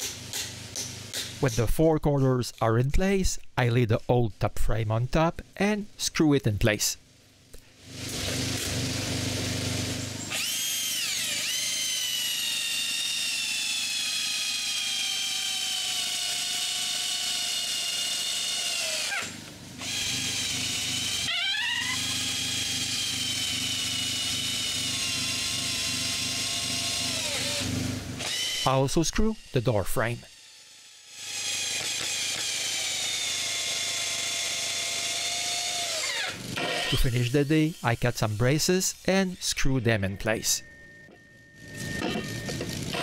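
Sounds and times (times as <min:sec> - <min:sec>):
power drill driving screws: 0:07.9 - 0:29.6, 0:30.3 - 0:38.5, 0:41.6 - 0:43.0.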